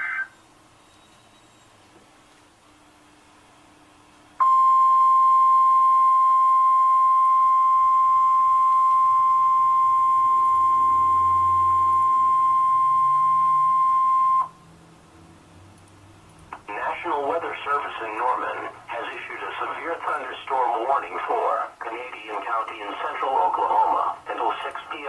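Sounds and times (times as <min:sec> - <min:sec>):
steady high warning beep: 0:04.4 - 0:14.6.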